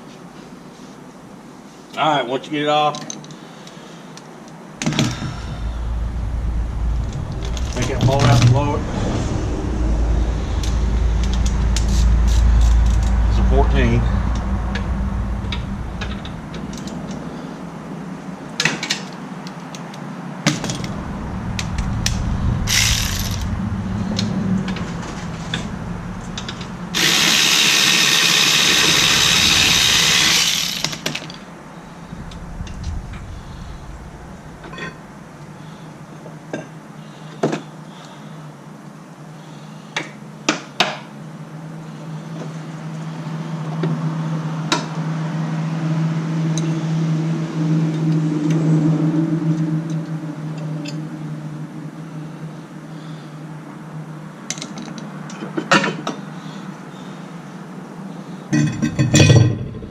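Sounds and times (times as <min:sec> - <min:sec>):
power tool loosening bolts: 0:27.0 - 0:31.3.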